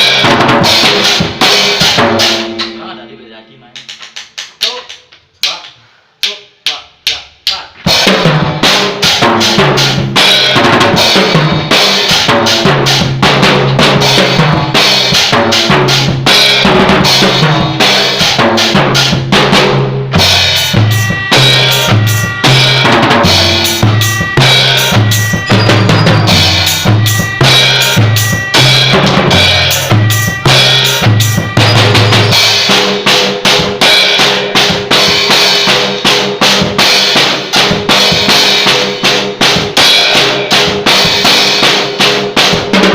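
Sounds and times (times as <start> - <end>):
drum kit beat: 0.0 - 3.2, 3.8 - 42.9
band playing a song: 7.9 - 42.9
bass line: 18.7 - 32.7.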